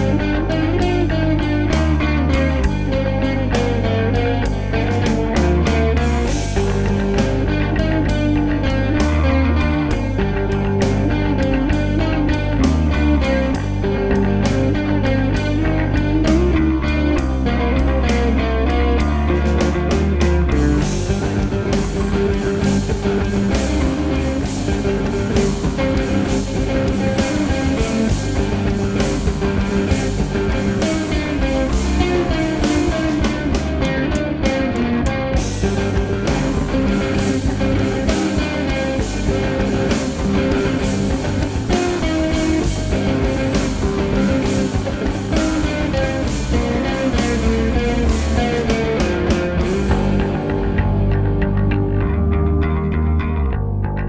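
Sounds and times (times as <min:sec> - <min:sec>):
instrumental music with guitar: 0:00.0 - 0:54.0.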